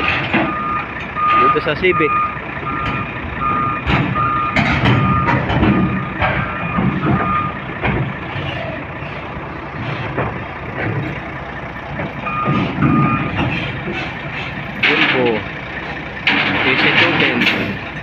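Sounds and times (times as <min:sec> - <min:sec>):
diesel engine running: 0:00.0 - 0:18.0
backup alarm beeping: 0:00.4 - 0:08.3, 0:12.2 - 0:13.4.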